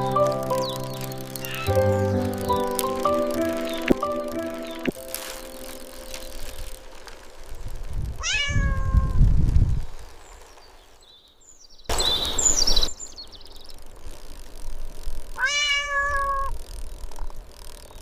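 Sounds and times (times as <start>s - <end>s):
cat meowing: 1.4s - 1.7s, 8.2s - 9.2s, 15.4s - 16.6s.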